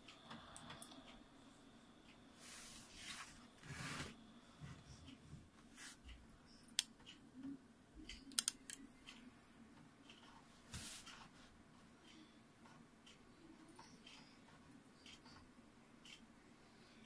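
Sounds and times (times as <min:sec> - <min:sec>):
sharp clicks: 0:08.1 - 0:08.9
faint rustling handling noises: 0:10.2 - 0:12.0.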